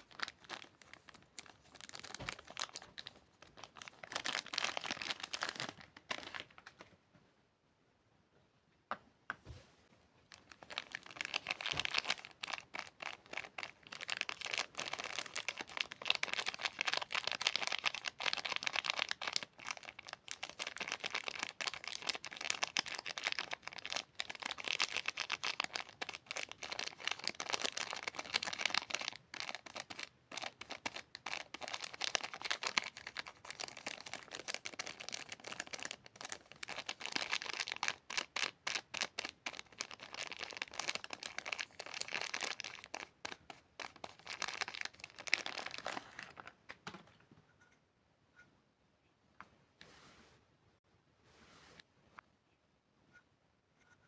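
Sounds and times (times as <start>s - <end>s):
wrappers crinkling and tearing: 0.0s - 6.8s, 10.3s - 46.5s.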